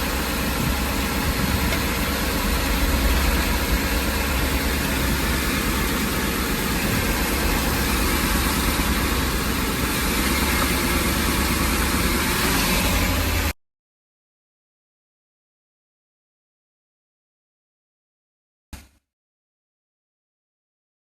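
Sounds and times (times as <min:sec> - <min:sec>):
van engine idling: 0:00.0 - 0:13.6.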